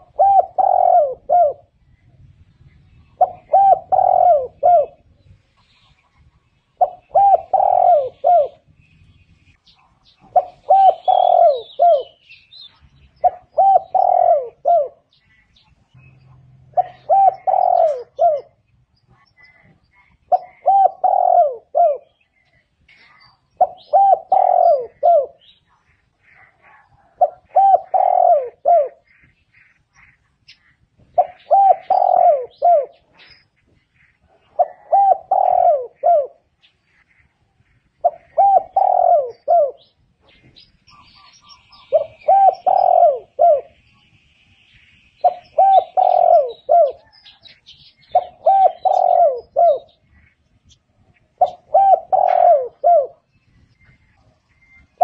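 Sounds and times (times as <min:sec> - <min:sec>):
dove cooing: 0:00.0 - 0:01.8, 0:03.0 - 0:05.2, 0:06.7 - 0:08.7, 0:09.8 - 0:29.3, 0:31.0 - 0:33.4, 0:34.0 - 0:43.8, 0:45.2 - 0:55.0.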